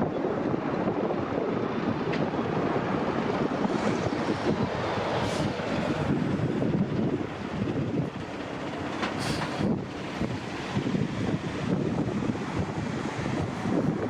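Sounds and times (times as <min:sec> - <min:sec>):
jet engines roaring: 0:00.0 - 0:14.0
wind buffeting microphone: 0:00.0 - 0:14.0.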